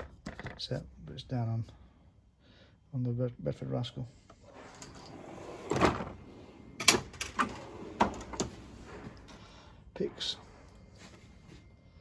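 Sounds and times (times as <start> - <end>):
metal drawers sliding: 4.4 - 10.7
drawer shutting clunk: 4.7 - 9.3.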